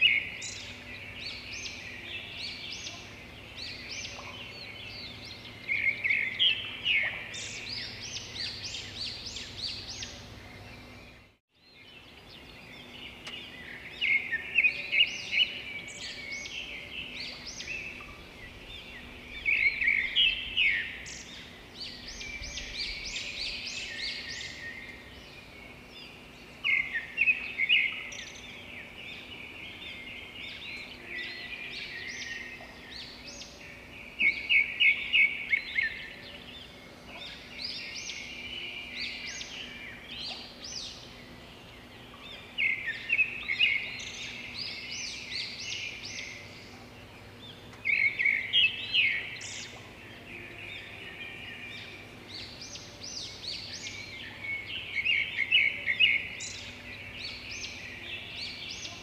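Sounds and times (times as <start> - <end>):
birds chirping: 0.0 - 59.0.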